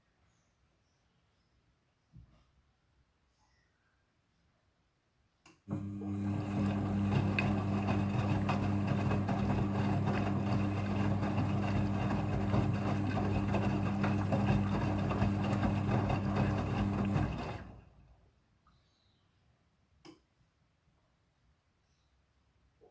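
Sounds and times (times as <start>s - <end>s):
washing machine running: 5.7s - 18.2s.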